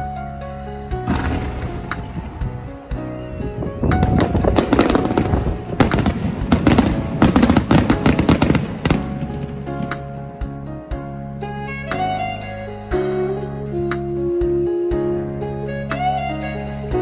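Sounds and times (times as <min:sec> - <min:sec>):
background music: 0:00.0 - 0:17.0
fireworks crackling: 0:01.0 - 0:10.2.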